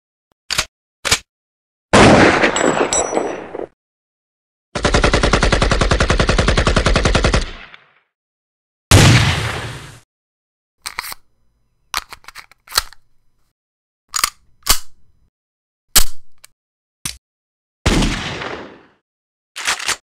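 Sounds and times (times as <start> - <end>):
gunshots: 2.0 - 3.7, 8.9 - 10.0, 17.9 - 19.0.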